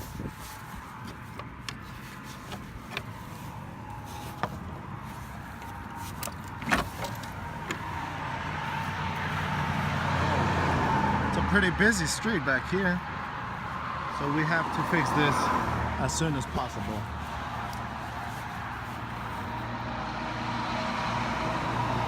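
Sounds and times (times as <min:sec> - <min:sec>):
road traffic hum: 0:00.0 - 0:22.0.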